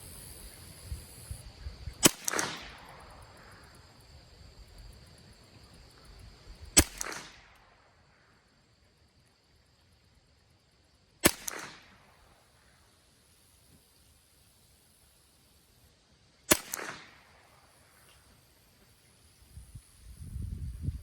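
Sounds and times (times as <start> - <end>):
rifle shots with echo: 2.0 - 3.7, 6.8 - 7.8, 11.2 - 12.4, 16.5 - 17.7.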